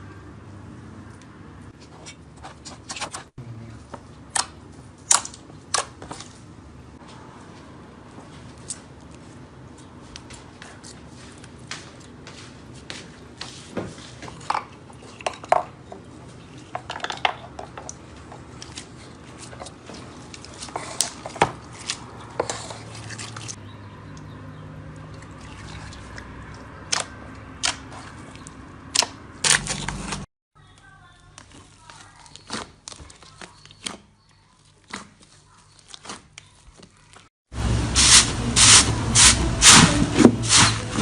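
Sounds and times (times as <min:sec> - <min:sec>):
slime squelching by hand: 0:17.9 - 0:30.3, 0:31.3 - 0:37.3.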